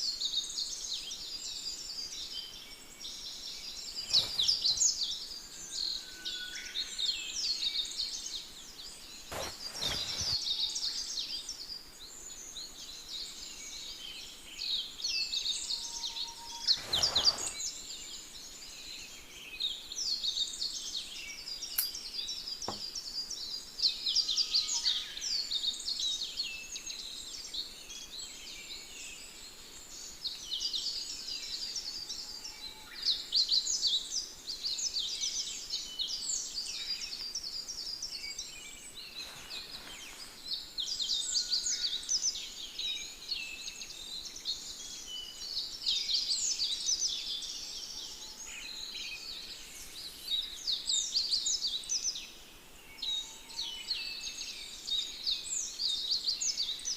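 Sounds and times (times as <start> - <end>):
birds chirping and singing: 0.0 - 56.9
brief rustles: 4.0 - 5.0, 9.3 - 10.6, 16.6 - 17.7, 39.2 - 40.5.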